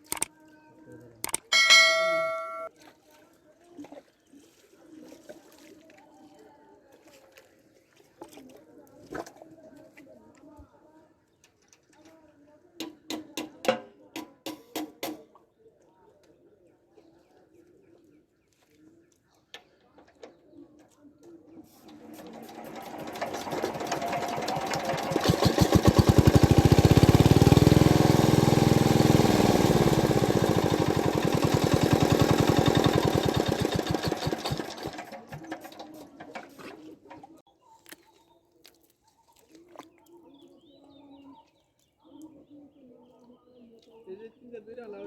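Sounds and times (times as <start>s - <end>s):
small engine passing by: 21.8s - 35.8s.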